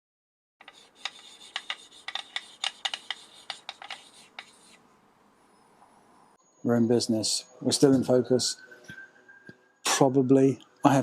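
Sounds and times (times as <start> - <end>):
faint rubbing: 0.6 - 4.8.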